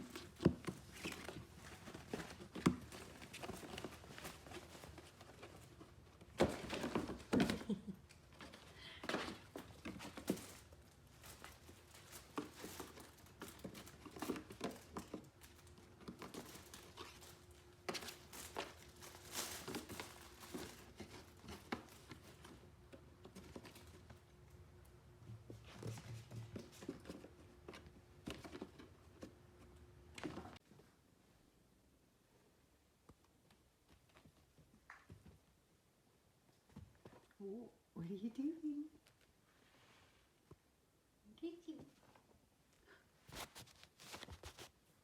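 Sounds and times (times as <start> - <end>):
kittens' paws pattering: 0.0 - 30.8, 41.8 - 45.0.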